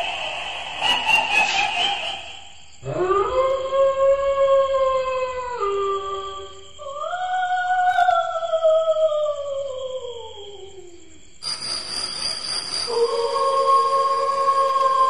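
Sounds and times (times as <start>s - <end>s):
hiss with high whistle: 0.0s - 2.8s, 11.4s - 15.0s.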